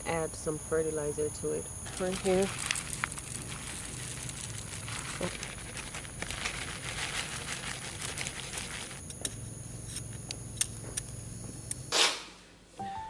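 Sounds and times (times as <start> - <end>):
rustling and crinkling: 1.8 - 9.2.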